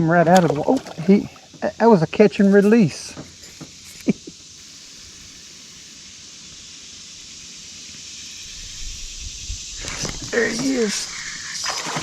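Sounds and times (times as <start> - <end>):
insect chorus hiss: 0.0 - 12.0.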